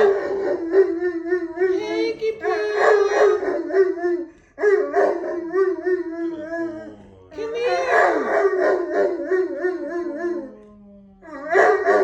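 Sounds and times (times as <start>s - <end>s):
dog howling: 0.0s - 12.0s.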